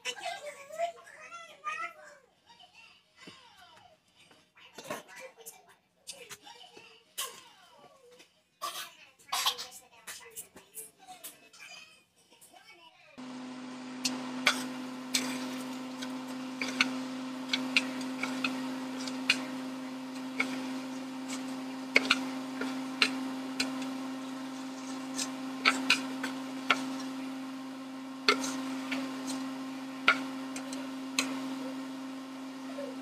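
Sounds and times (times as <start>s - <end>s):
steady low hum: 13.2s - 33.0s.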